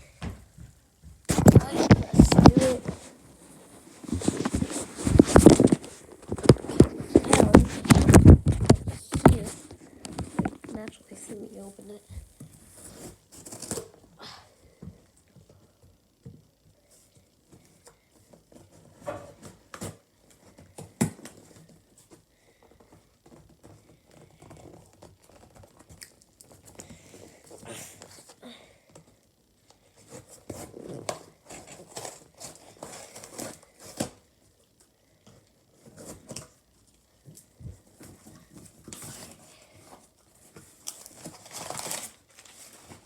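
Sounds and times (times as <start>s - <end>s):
packaging crinkling and tearing: 40.6s - 43.0s.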